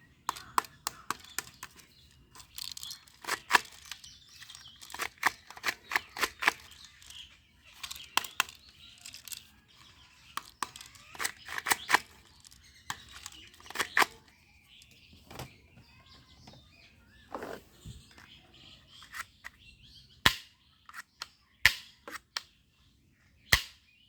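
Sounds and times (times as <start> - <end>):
plastic toy guns clicking: 0.3 - 14.3, 20.2 - 22.4, 23.5 - 23.8.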